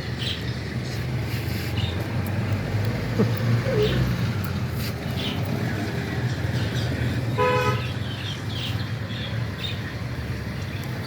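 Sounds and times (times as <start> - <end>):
low traffic hum: 0.0 - 11.0
vehicle horn beep: 7.4 - 7.9.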